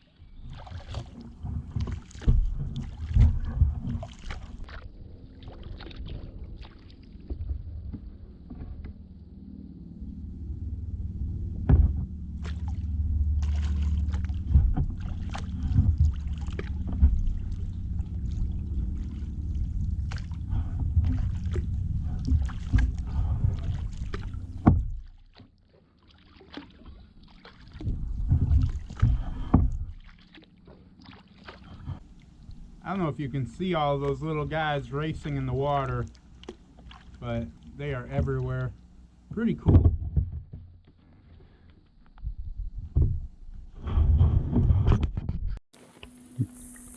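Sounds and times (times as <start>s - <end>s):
paddle splashing in water: 0.0s - 9.0s, 11.6s - 41.6s
steady low rumble: 1.2s - 25.1s, 27.8s - 30.1s, 31.7s - 39.7s.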